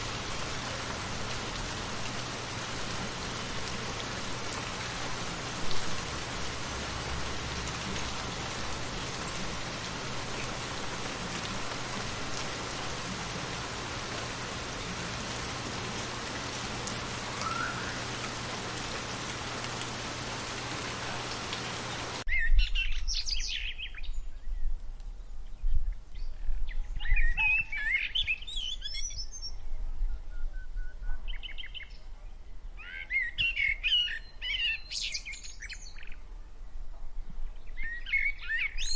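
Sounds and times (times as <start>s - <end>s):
steady rain falling: 0.0s - 22.3s
birds chirping and singing: 13.2s - 22.2s.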